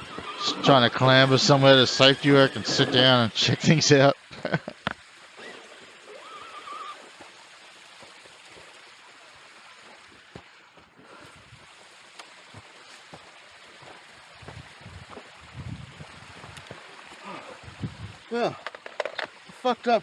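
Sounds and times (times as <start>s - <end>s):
rushing water of rapids: 0.0s - 20.0s
faint clicks and knocks: 18.6s - 19.6s.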